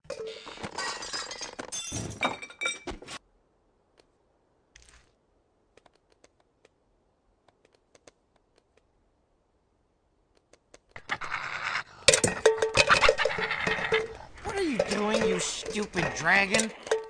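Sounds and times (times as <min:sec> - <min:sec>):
faint clicks: 0:05.7 - 0:06.8, 0:07.4 - 0:08.9.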